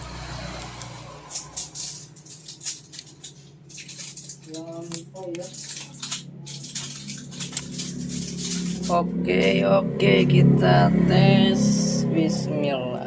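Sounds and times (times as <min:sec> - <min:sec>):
steady low hum: 0:00.0 - 0:13.0
small hard parts clicking and rattling: 0:00.5 - 0:09.0.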